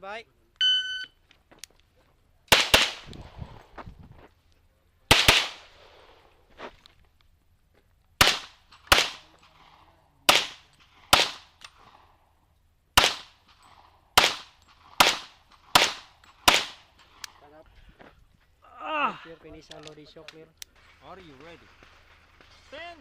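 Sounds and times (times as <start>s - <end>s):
pistol shots with echo: 2.5s - 3.1s, 5.1s - 5.7s, 8.2s - 9.3s, 10.3s - 11.5s, 13.0s - 13.4s, 14.2s - 16.8s.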